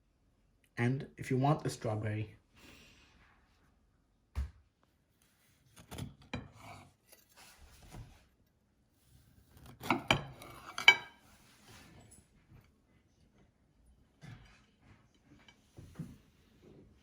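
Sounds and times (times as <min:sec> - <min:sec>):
dishes and utensils clinking: 0:09.5 - 0:12.1.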